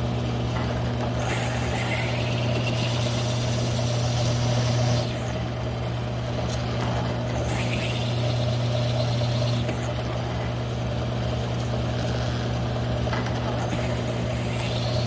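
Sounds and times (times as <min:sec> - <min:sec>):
drill motor hum: 0:00.0 - 0:15.0
high whine of saw cutting steel: 0:01.2 - 0:05.4, 0:07.3 - 0:10.9, 0:13.6 - 0:15.0.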